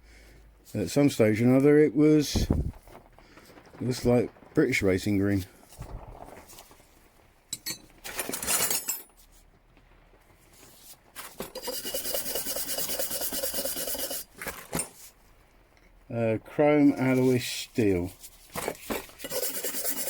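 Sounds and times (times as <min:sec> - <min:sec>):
metal hand tools clattering: 0:07.5 - 0:09.2
scraping and rubbing on metal: 0:10.6 - 0:15.2, 0:17.1 - 0:20.0.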